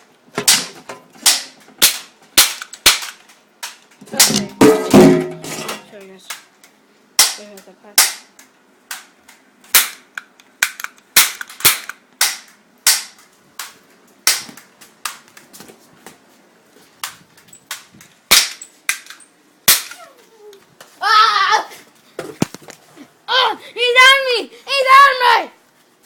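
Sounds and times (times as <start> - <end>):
toy cap guns firing: 1.2 - 4.4, 9.7 - 13.7.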